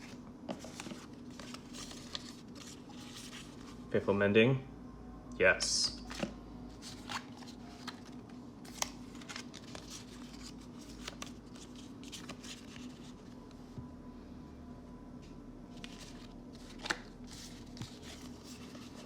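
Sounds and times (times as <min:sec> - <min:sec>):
cards being flipped through: 0:00.0 - 0:03.7, 0:06.0 - 0:13.4, 0:15.7 - 0:19.0
faint steady hum: 0:00.0 - 0:19.0.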